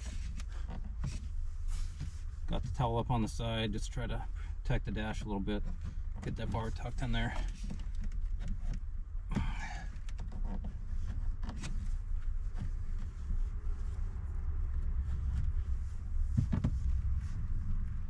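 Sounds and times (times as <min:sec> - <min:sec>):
low rumble: 0:12.1 - 0:18.0.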